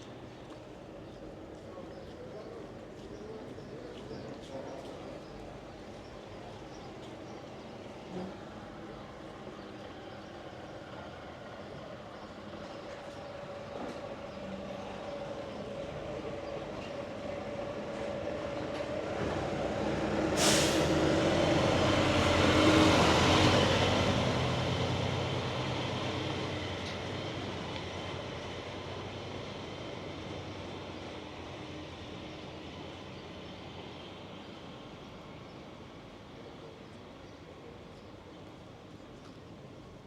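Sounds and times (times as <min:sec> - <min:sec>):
heavy vehicle engine passing: 0:19.5 - 0:26.0
short sharp hiss: 0:20.4 - 0:20.9.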